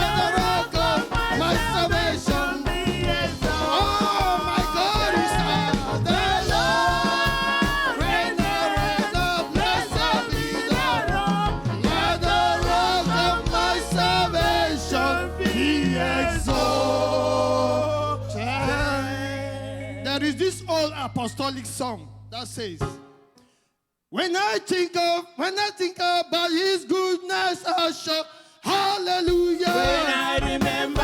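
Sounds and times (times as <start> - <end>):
band with steady drumbeat: 0.0 - 19.3, 28.8 - 31.0
gospel singing voices: 0.0 - 22.1, 24.2 - 31.0
held bass notes: 0.0 - 23.0.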